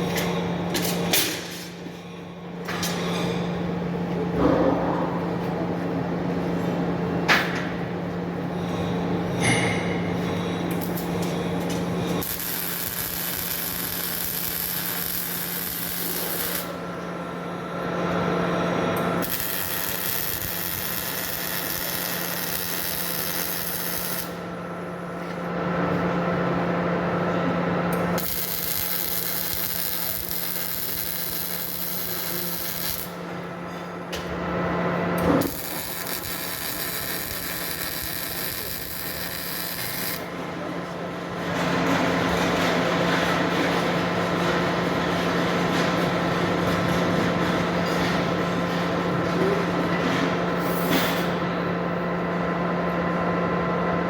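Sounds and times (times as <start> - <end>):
steady electrical hum: 0.0 - 41.7
welding arc crackling: 12.2 - 16.8, 19.2 - 24.4, 28.2 - 33.2, 35.4 - 40.3.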